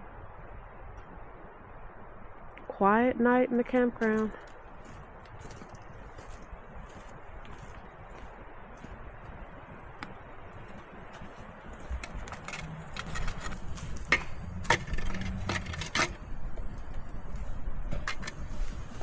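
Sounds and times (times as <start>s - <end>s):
campfire crackling and popping: 9.8s - 19.0s.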